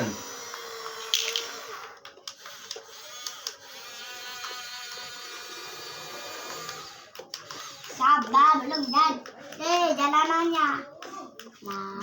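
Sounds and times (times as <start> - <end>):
small electric motor whirring: 0.0 - 9.2.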